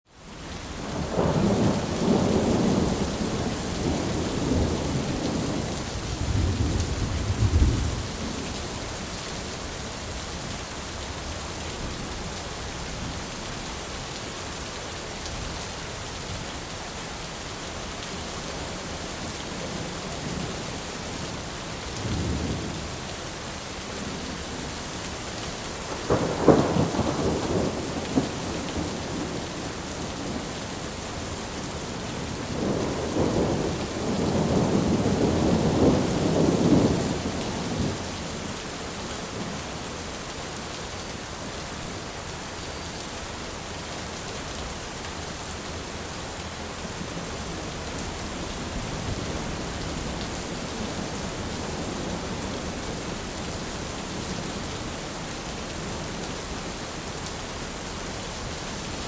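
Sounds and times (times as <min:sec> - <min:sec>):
steady rain: 0:00.1 - 0:59.0
rolling thunder: 0:00.9 - 0:08.5, 0:25.9 - 0:29.4, 0:32.4 - 0:38.0.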